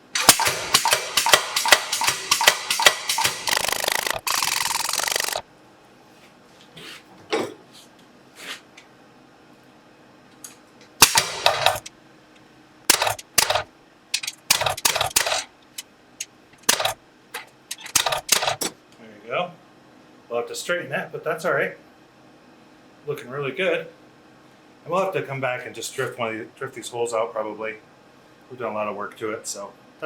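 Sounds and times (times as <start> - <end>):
power hammer blows on steel: 0.0 - 5.4, 11.0 - 11.9, 12.9 - 15.8, 16.6 - 17.0
sharp metallic knocks and clinks: 11.0 - 11.9, 12.9 - 15.8, 17.7 - 18.7.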